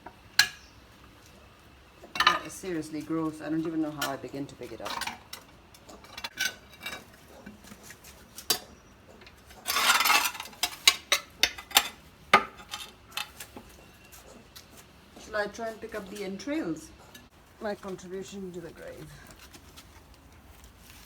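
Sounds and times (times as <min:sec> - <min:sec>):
metal tool clinking and scraping: 0:02.1 - 0:18.1.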